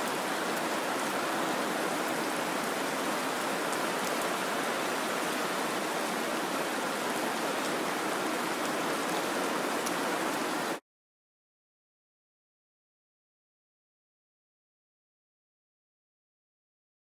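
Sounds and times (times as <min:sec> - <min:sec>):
steady rain hiss: 0:00.0 - 0:10.8.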